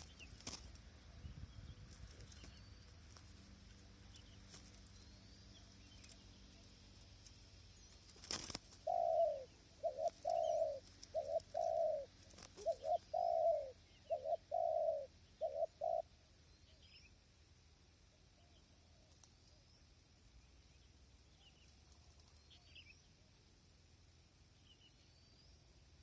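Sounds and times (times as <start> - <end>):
dove cooing: 8.3 - 16.2.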